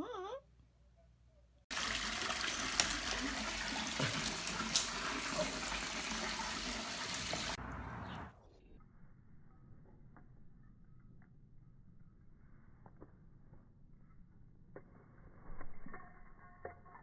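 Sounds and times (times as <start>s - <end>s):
water rushing: 1.7s - 7.6s.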